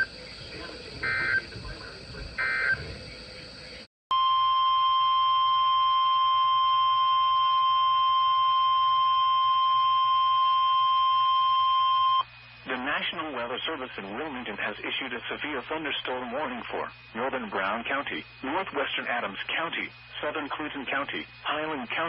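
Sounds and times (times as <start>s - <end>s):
buzzy digital data bursts: 0.0s - 3.8s
steady warning alarm tone: 0.8s - 1.6s, 2.4s - 3.0s.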